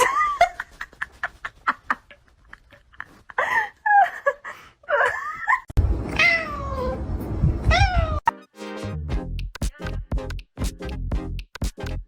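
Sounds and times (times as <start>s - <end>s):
cat meowing: 6.1s - 7.0s, 7.7s - 8.2s
pet whining cries: 6.1s - 7.0s, 7.7s - 8.2s
music: 8.3s - 12.0s.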